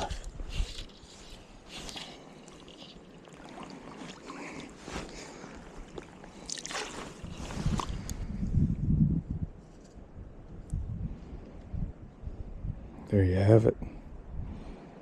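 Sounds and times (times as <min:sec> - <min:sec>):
wind noise on microphone: 0:00.0 - 0:02.0, 0:06.7 - 0:15.0
stream water splashing: 0:01.0 - 0:08.1.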